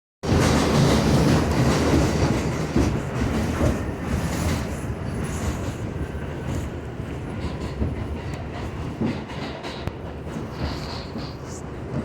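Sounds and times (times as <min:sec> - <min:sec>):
subway train rumbling and rattling: 0:00.2 - 0:12.0.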